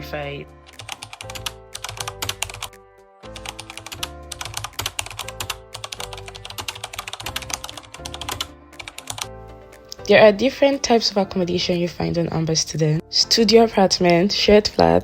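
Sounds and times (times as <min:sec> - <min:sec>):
background music with held notes: 0:00.0 - 0:15.0
rapid keyboard typing: 0:00.7 - 0:09.3.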